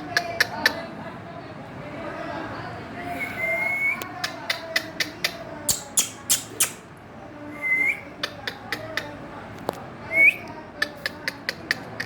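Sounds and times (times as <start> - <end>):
parakeet chirping: 4.2 - 6.9.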